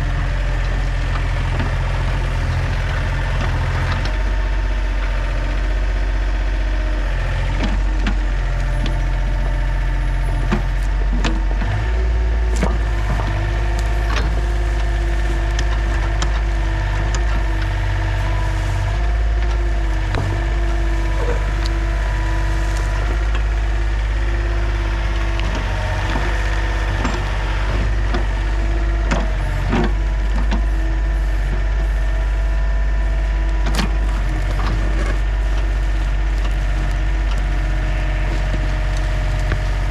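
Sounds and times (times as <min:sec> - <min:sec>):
excavator diesel engine running: 0:00.0 - 0:39.9
wood cracking and snapping: 0:33.5 - 0:39.9.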